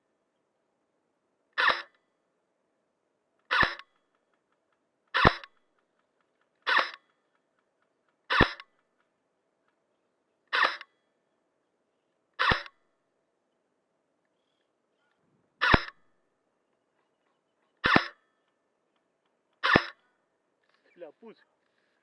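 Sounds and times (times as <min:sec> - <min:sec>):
airsoft gun shots: 0:03.5 - 0:03.8, 0:08.3 - 0:08.6, 0:12.4 - 0:12.7, 0:15.6 - 0:16.0, 0:17.8 - 0:18.2, 0:19.6 - 0:20.0.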